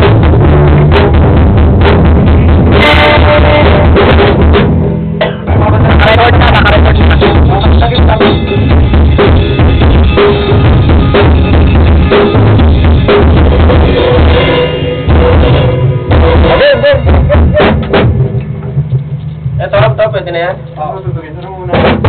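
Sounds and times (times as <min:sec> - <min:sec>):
drum kit rock beat: 0:00.0 - 0:20.1, 0:21.6 - 0:22.0
other band instruments: 0:00.0 - 0:20.1
held tone: 0:06.7 - 0:17.5.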